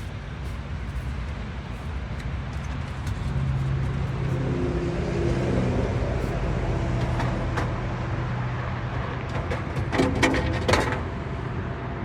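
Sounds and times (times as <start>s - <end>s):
outboard motor droning: 0.0s - 9.3s.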